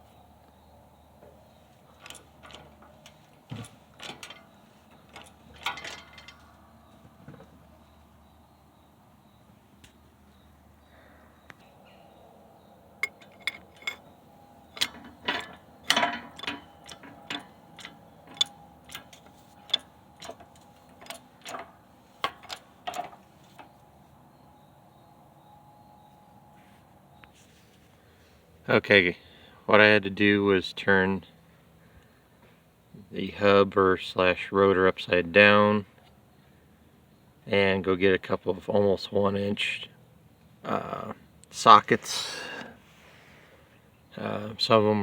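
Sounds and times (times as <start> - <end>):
metal tools clicking against hub: 1.9 - 6.5, 13.0 - 23.7.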